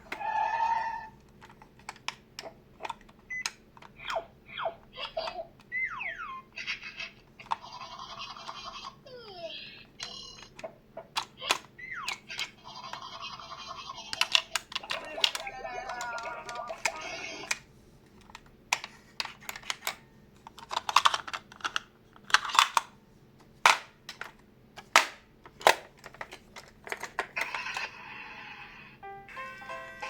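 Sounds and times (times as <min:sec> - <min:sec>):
toy electronic siren: 0:00.2 - 0:01.1, 0:05.7 - 0:06.4
plastic clicks and knocks: 0:01.2 - 0:04.2, 0:14.1 - 0:17.6, 0:18.2 - 0:27.7.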